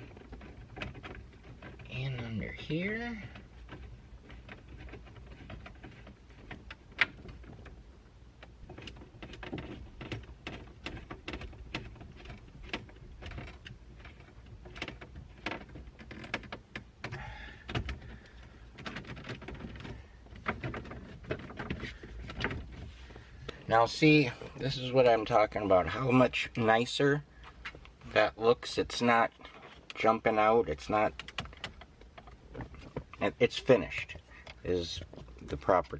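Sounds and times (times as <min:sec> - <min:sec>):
plastic trim clicks and knocks: 0:31.0 - 0:33.2.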